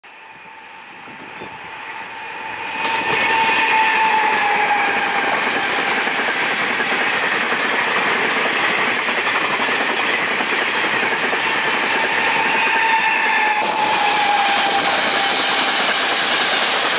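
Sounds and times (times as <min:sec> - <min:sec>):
high steady locomotive whine: 0:00.0 - 0:16.9
train wheels rumbling on rail: 0:00.0 - 0:16.9.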